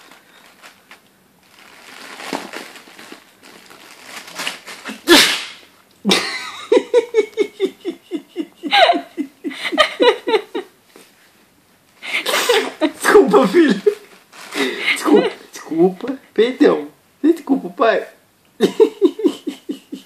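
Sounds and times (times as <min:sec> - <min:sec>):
man sneezing: 0:04.9 - 0:05.6, 0:12.2 - 0:12.8
fast rhythmic laughter: 0:06.1 - 0:10.7, 0:18.6 - 0:20.0.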